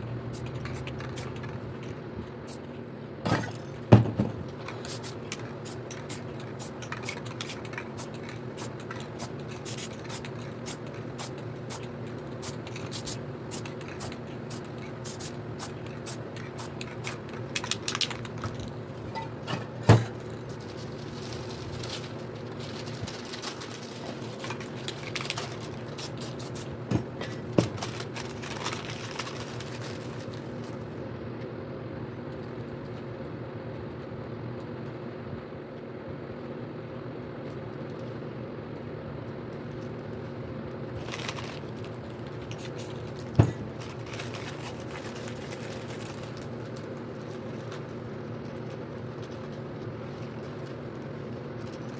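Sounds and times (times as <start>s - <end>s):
steady mechanical hum: 0.0s - 51.9s
spray paint cans hissing: 0.3s - 1.6s, 2.4s - 2.6s, 4.7s - 18.6s, 25.0s - 26.8s, 42.5s - 43.6s.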